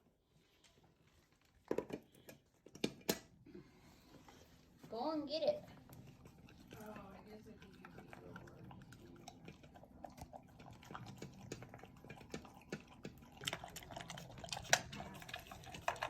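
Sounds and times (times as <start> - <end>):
dog chewing wetly: 5.6 - 16.0.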